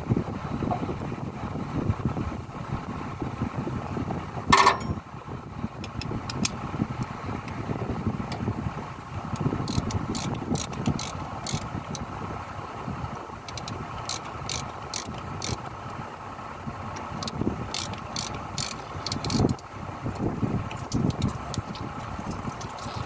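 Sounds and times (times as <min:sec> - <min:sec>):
sharp metallic clicks: 0:09.4 - 0:11.7, 0:13.5 - 0:15.6, 0:17.2 - 0:19.6.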